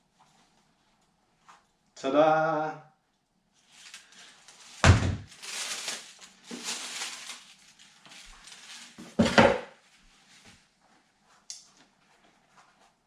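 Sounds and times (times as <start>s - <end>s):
packaging rustling: 3.6s - 9.2s.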